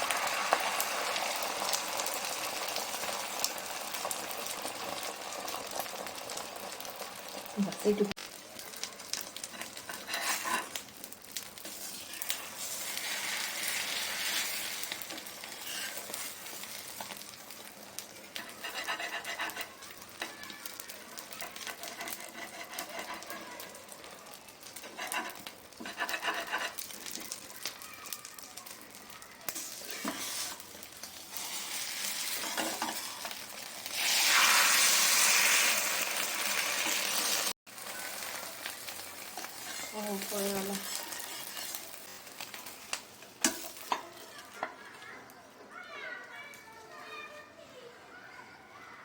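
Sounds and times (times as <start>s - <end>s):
omelette sizzling in a pan: 0.0s - 47.5s
scraping from stirring: 9.4s - 10.8s, 11.6s - 17.2s, 18.4s - 20.7s, 29.5s - 30.6s, 39.3s - 42.8s.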